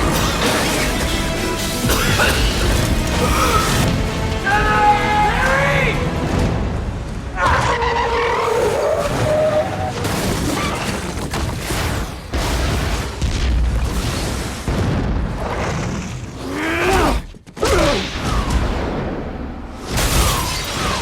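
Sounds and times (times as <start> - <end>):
heavy rumbling and crashing booms: 11.9 - 16.3.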